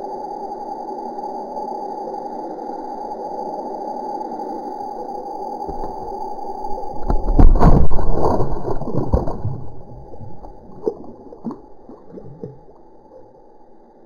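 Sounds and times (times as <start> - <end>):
water splashing and gurgling: 5.7 - 13.9
water drips and plops: 6.8 - 13.4.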